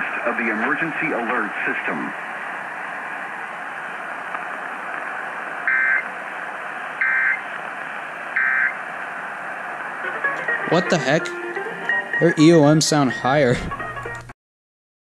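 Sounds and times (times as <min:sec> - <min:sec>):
radio static hiss: 0:00.0 - 0:14.3
two-tone data warble bursts: 0:05.7 - 0:06.0, 0:07.0 - 0:07.4, 0:08.4 - 0:08.8.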